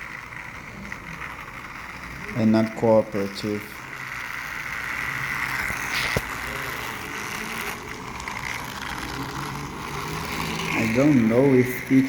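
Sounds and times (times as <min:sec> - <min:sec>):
toy train motor whirring: 0:00.0 - 0:12.0.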